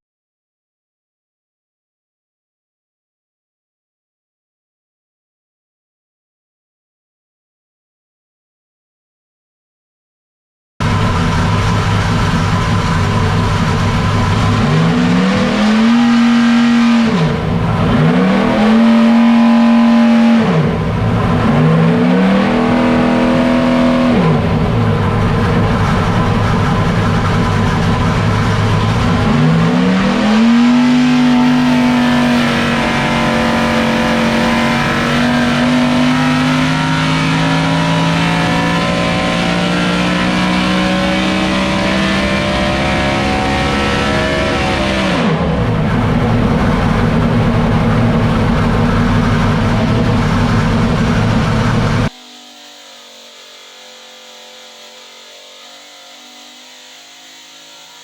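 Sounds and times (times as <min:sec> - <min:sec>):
engine revving: 0:10.8 - 0:52.3, 0:53.2 - 0:58.0.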